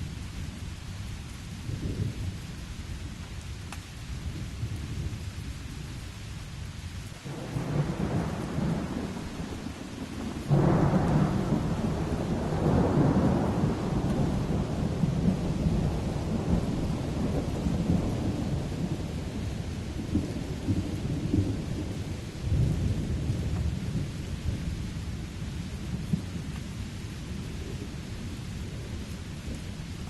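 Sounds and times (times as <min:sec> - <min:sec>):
steady rain: 0:00.0 - 0:30.0
rolling thunder: 0:07.2 - 0:25.1
thunder crack: 0:10.5 - 0:17.0.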